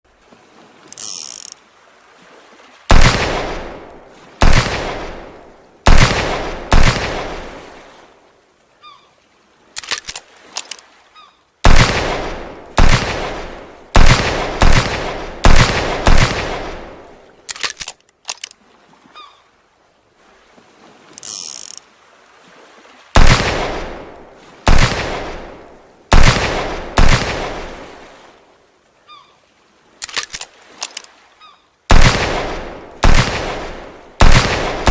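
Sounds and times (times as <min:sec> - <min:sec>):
revolver gunshots with echo: 0:02.9 - 0:03.8, 0:04.4 - 0:07.5, 0:11.7 - 0:17.0, 0:23.2 - 0:24.1, 0:24.7 - 0:27.8, 0:31.9 - 0:34.9
short clicks: 0:09.8 - 0:10.8, 0:30.0 - 0:31.1.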